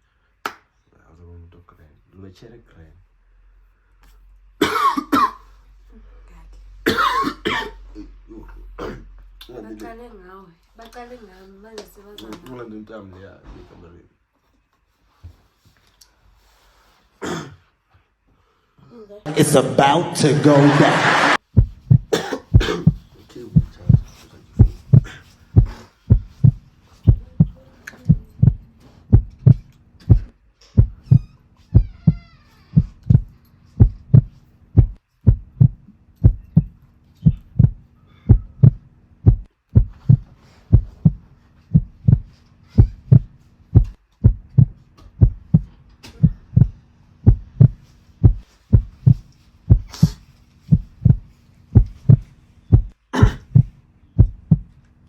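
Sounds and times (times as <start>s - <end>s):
deep heartbeat thumps: 21.4s - 54.8s.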